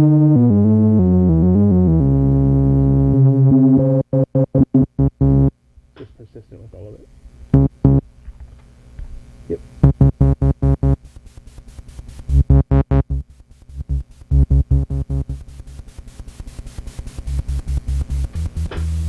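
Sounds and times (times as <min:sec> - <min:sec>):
synthesizer low staccato notes: 0:00.0 - 0:05.5, 0:07.6 - 0:08.0, 0:09.8 - 0:11.0, 0:12.3 - 0:15.8
faint steady hum: 0:00.8 - 0:19.0.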